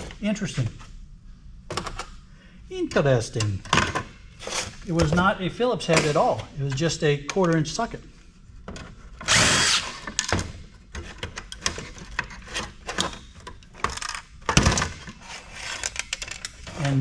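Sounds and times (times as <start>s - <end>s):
power driver whirring: 9.3s - 10.1s.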